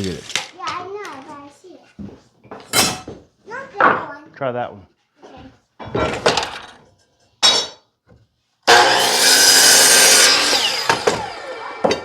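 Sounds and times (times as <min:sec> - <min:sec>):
electric power saw cutting wood: 0:08.7 - 0:12.0
saw motor winding down: 0:08.7 - 0:12.0.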